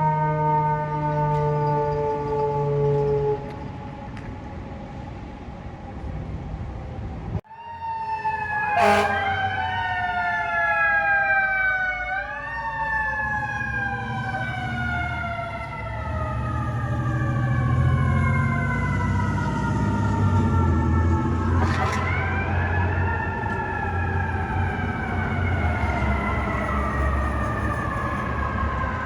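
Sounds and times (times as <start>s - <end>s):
street traffic: 0.2s - 29.0s
sharp siren blast: 7.4s - 29.0s
mechanical siren wailing: 7.5s - 29.0s
siren falling in pitch: 7.5s - 29.0s.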